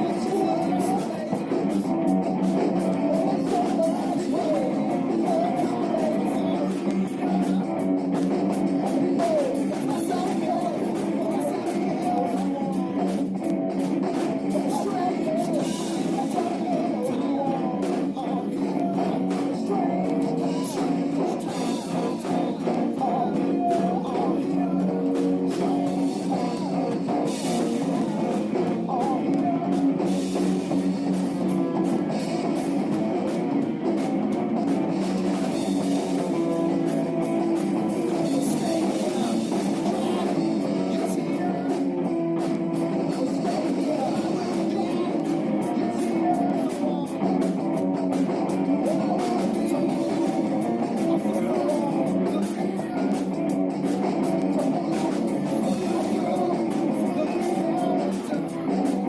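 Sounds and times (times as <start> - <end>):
drum kit beat: 0.0 - 59.0
electric guitar: 0.0 - 59.0
person singing: 0.0 - 59.0.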